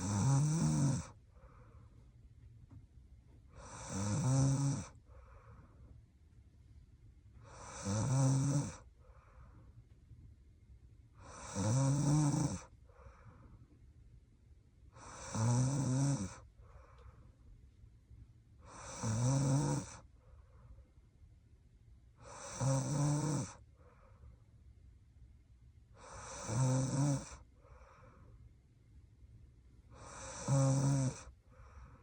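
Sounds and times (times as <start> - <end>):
woman snoring: 0.0 - 1.2, 3.6 - 5.0, 7.5 - 8.9, 11.2 - 12.7, 15.0 - 16.5, 18.7 - 20.1, 22.2 - 23.6, 26.0 - 27.5, 30.0 - 31.4
soft breath: 1.1 - 2.4, 4.9 - 6.2, 8.8 - 10.1, 12.6 - 14.0, 16.4 - 17.7, 20.0 - 21.1, 23.5 - 24.6, 27.3 - 28.6, 31.2 - 32.0.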